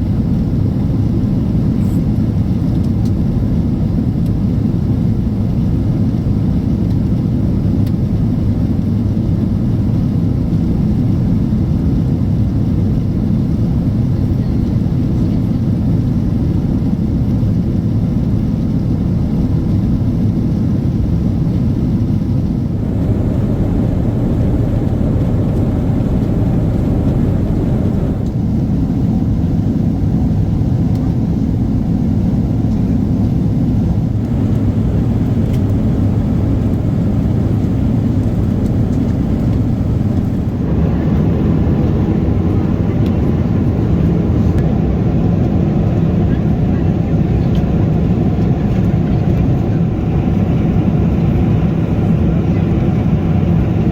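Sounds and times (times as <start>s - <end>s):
airplane cabin rumble: 18.6s - 53.9s.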